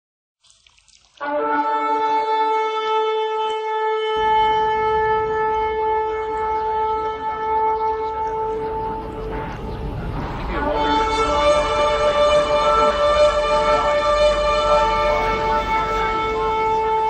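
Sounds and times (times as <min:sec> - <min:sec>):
long horn blast: 0:01.2 - 0:17.0
low rumble: 0:04.2 - 0:16.9.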